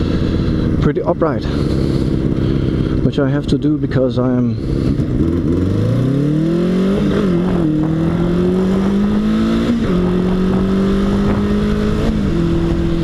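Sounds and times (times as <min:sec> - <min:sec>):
motorcycle engine accelerating: 0:00.0 - 0:13.0.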